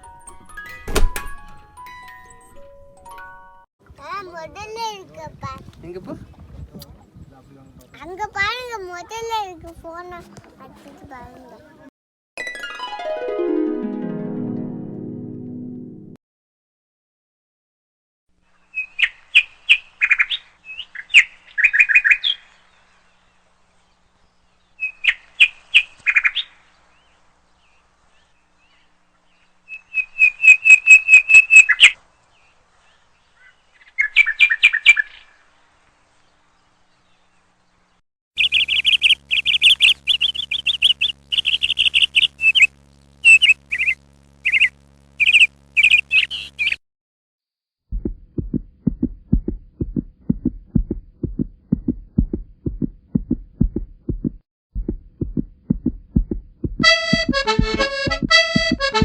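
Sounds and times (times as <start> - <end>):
bird chirping rapidly: 29.7 - 32.0, 38.4 - 46.8
low throbbing: 47.9 - 59.0.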